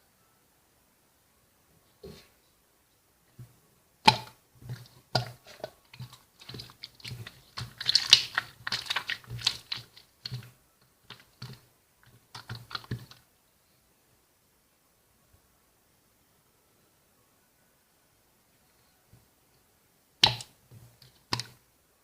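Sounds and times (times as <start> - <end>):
slime clicking and popping: 4.1 - 4.4, 5.2 - 10.5, 12.3 - 13.2, 20.2 - 20.6.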